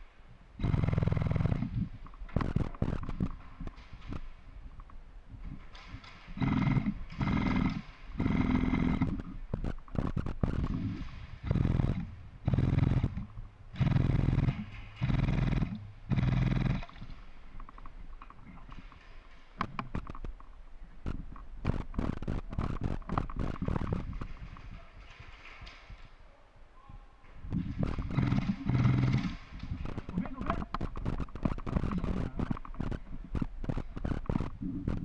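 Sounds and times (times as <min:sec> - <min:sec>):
electric gun firing bursts: 0:06.0 - 0:17.0.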